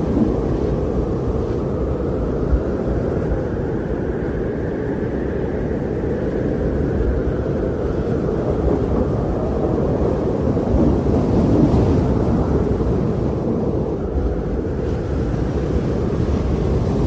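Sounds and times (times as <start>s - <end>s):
low wind rushing: 0.0s - 17.0s.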